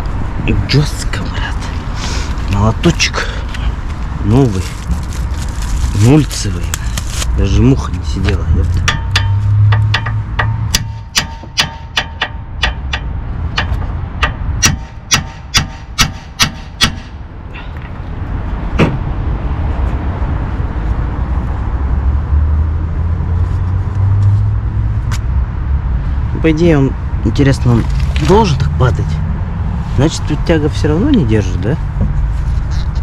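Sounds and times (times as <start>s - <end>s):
low rumble: 3.5s - 11.5s
hammer striking metal: 8.8s - 17.2s.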